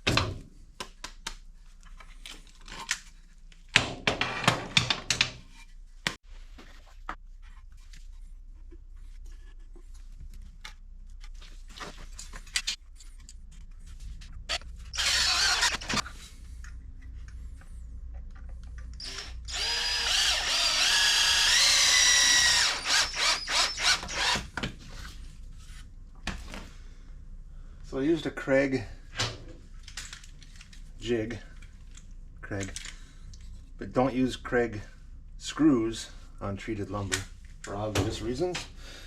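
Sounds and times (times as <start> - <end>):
power drill whining: 14.9 - 16.0, 19.0 - 24.5.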